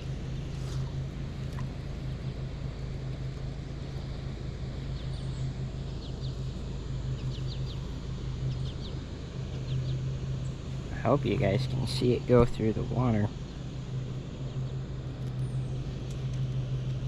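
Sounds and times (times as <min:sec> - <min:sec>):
low mechanical hum: 0:00.0 - 0:17.0
small bird chirping: 0:04.8 - 0:13.7, 0:14.3 - 0:17.0.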